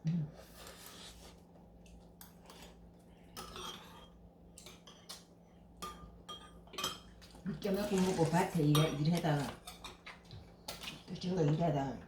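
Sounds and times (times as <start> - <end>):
cutlery clinking against bowls: 2.2 - 11.6.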